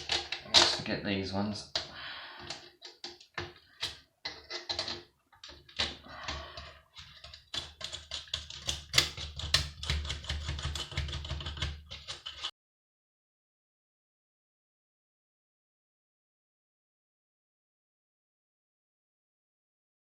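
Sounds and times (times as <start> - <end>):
tools clicking on metal chassis: 2.5 - 12.5.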